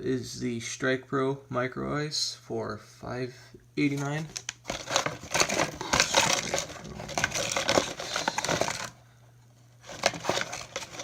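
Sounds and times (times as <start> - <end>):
plastic packaging crinkling: 4.2 - 9.0, 9.8 - 11.0
lures rattling in box: 4.4 - 8.9, 9.8 - 11.0.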